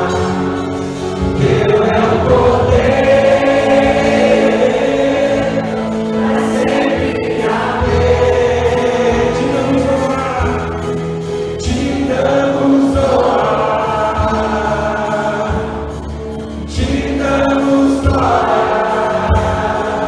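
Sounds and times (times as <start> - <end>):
choir singing: 0.0 - 20.0.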